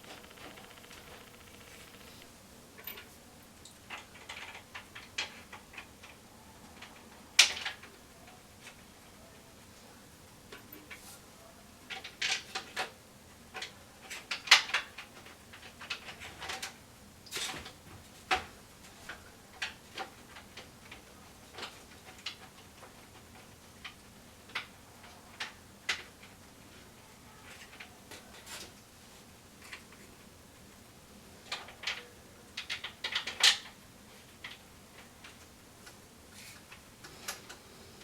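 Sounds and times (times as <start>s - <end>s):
clicks and knocks of computer fan: 0.0s - 2.3s.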